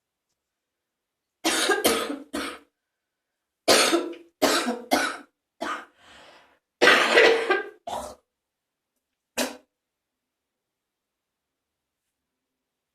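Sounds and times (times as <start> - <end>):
person coughing wetly: 1.4 - 2.7, 3.7 - 6.0, 6.8 - 8.2.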